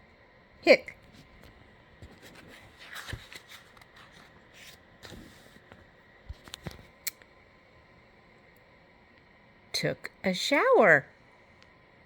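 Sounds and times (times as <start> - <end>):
book page turning: 1.3 - 6.9.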